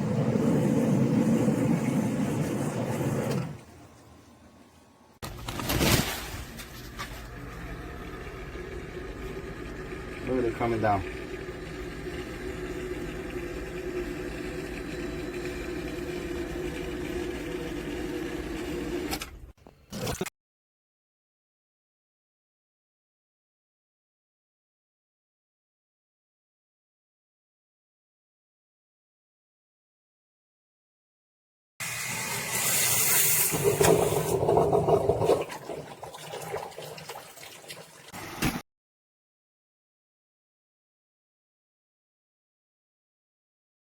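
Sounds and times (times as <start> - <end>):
water pouring: 0.0 - 3.6, 31.8 - 38.2.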